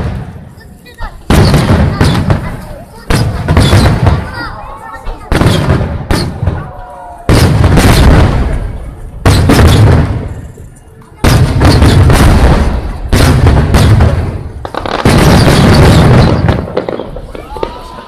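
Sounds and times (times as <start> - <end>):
firework booms with crackling: 0.0 - 18.0.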